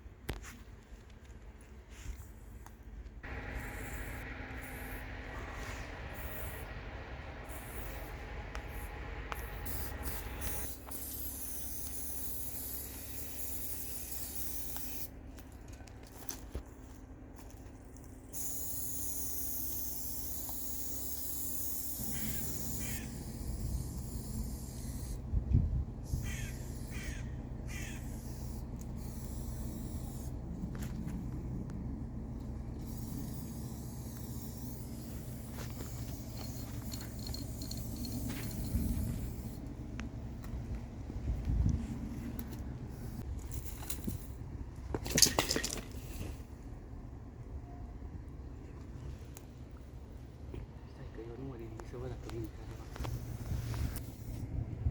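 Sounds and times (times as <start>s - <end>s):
steady low hum: 0.0s - 54.9s
spray-paint can hissing: 3.6s - 6.6s, 7.4s - 15.1s, 18.3s - 25.2s, 32.8s - 39.6s.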